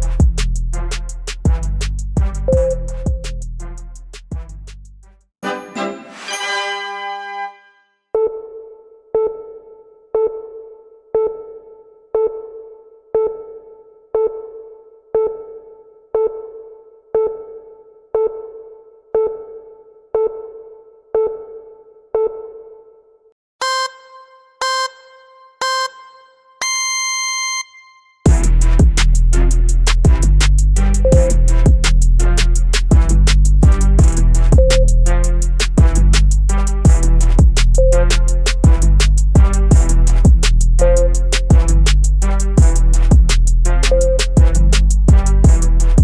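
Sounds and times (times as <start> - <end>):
electronic timer beeps: 2.5 - 3.4, 23.6 - 28.1, 31.0 - 31.6, 34.6 - 35.0, 37.8 - 38.4, 43.9 - 44.4.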